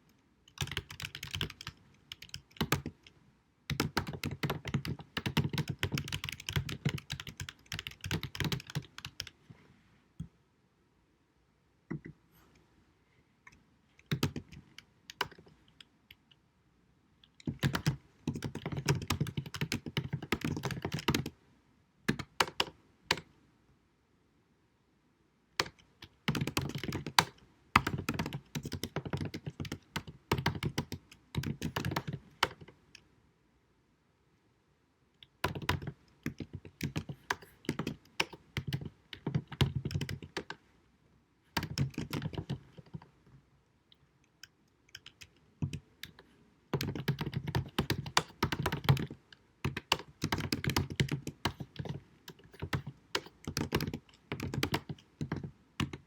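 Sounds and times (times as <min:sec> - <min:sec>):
computer keyboard typing: 0:00.5 - 0:03.1, 0:03.7 - 0:09.4, 0:14.0 - 0:15.5, 0:17.3 - 0:21.4, 0:22.1 - 0:23.3, 0:25.6 - 0:32.8, 0:35.2 - 0:40.6, 0:41.6 - 0:43.0, 0:44.4 - 0:56.0.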